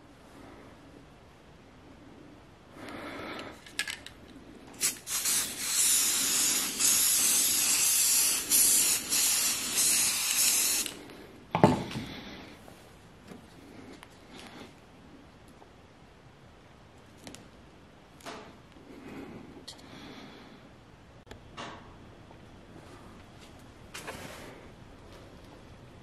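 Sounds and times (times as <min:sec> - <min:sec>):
aerosol can spraying: 0:04.8 - 0:11.0.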